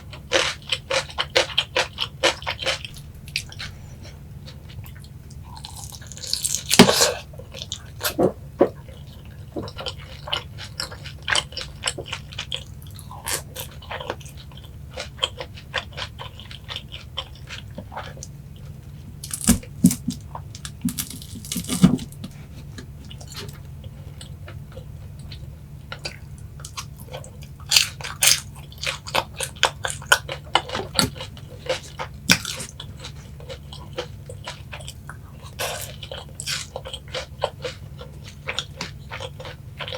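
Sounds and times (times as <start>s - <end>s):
faint low hum: 0.0s - 39.9s
wet chewing: 0.4s - 39.9s
crunching bites of fried chicken: 5.4s - 8.8s, 19.2s - 22.2s, 26.0s - 39.9s.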